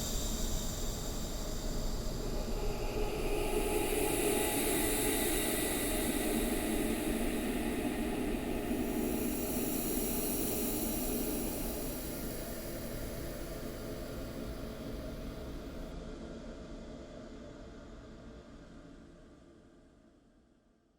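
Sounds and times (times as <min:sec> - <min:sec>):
hissing drone: 0:03.1 - 0:15.8.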